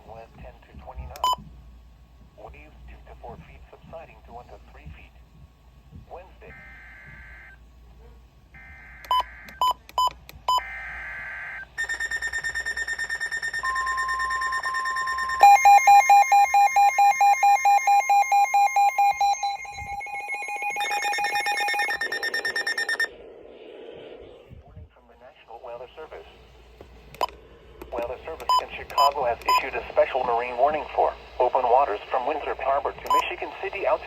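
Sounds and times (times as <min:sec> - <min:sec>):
steady warning tone: 0:02.2 - 0:23.4, 0:25.0 - 0:34.0
radio alarms beeping rapidly: 0:06.4 - 0:07.6, 0:08.6 - 0:23.1, 0:27.9 - 0:34.0
screechy data bursts: 0:10.6 - 0:16.1, 0:19.3 - 0:23.1
short beeps: 0:11.8 - 0:23.1, 0:28.4 - 0:29.7, 0:33.1 - 0:33.4.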